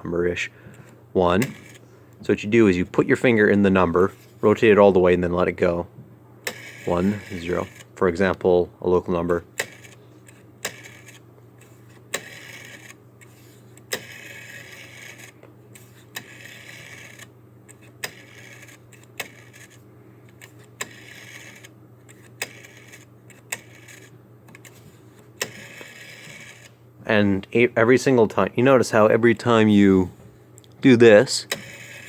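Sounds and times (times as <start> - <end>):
rotary dial whirring return: 0.3 - 1.8, 6.4 - 8.4, 9.1 - 26.8, 31.0 - 32.0
rotary telephone dial clicking: 1.4 - 1.8, 6.5 - 7.9, 9.6 - 11.2, 12.1 - 24.8, 25.4 - 26.7, 31.5 - 32.0.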